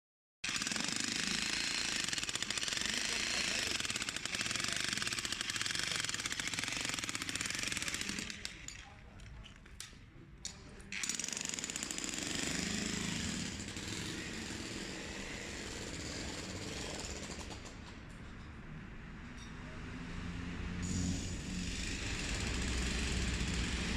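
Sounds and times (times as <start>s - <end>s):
jackhammer hammering: 0.4s - 8.7s, 10.9s - 17.9s, 20.9s - 23.9s.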